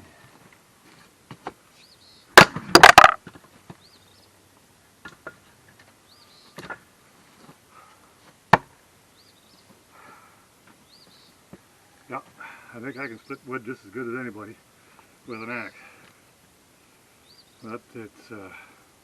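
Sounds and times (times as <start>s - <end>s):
axe splitting firewood: 2.4s - 3.2s
wood pieces knocking: 2.4s - 3.2s.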